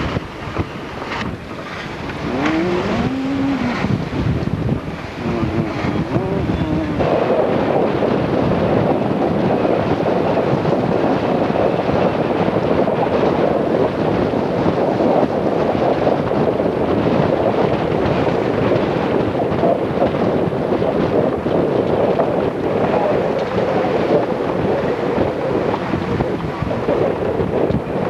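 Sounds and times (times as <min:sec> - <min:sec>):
rushing water: 0:00.0 - 0:28.0
wind buffeting microphone: 0:00.0 - 0:28.0.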